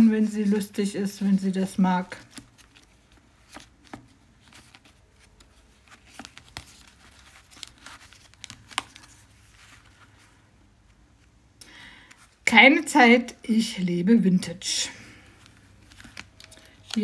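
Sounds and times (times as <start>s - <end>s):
paper rustling: 2.0s - 11.0s, 15.2s - 17.0s
pages turning with light clicks: 2.0s - 11.4s, 15.3s - 17.0s.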